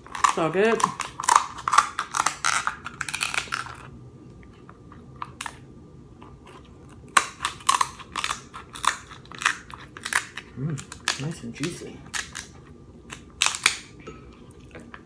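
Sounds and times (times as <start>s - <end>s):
crab legs cracking: 0.0s - 3.9s, 6.6s - 14.0s.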